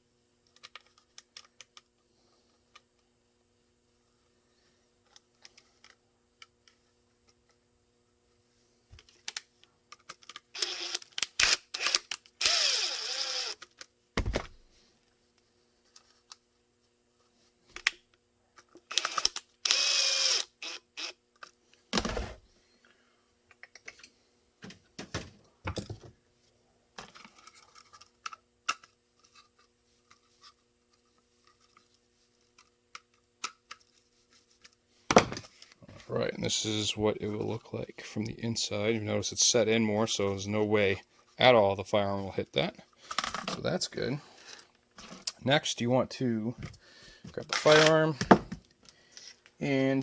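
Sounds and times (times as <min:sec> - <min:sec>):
small power tool whirring: 0:10.5 - 0:13.8, 0:18.8 - 0:21.2.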